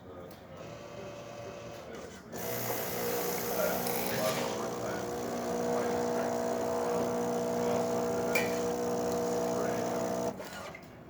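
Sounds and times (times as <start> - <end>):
espresso machine humming: 2.4 - 10.4.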